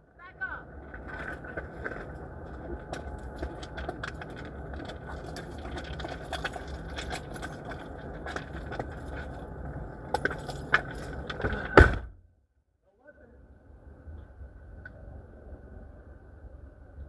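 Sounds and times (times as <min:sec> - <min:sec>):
low rumble: 0:00.0 - 0:12.4
clicks knocks and scraping: 0:00.9 - 0:11.8.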